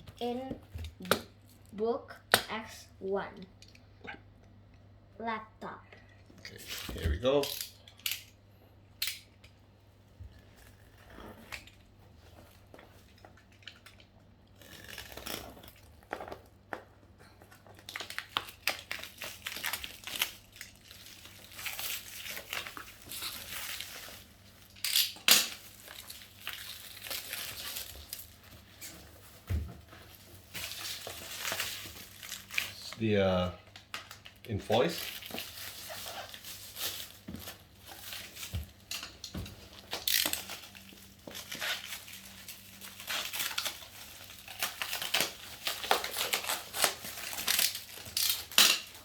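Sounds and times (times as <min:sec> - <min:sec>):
packaging crinkling and rustling: 0:10.4 - 0:49.0.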